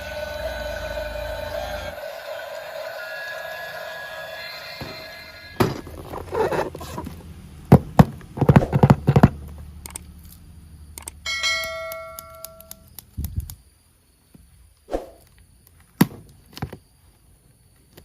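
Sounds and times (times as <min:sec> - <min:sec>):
hard objects knocking and clattering: 0:07.7 - 0:09.4
bell-like ding: 0:11.3 - 0:12.8.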